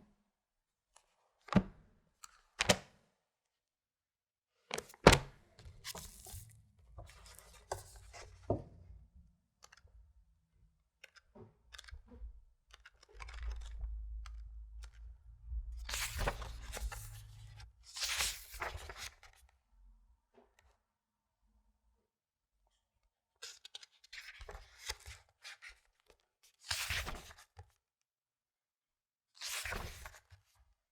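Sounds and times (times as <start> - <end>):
pages turning: 4.7 - 6.5, 7.1 - 8.4, 12.7 - 15.0, 15.9 - 19.3, 26.7 - 27.4, 29.4 - 30.2
book rubbing: 5.9 - 6.4.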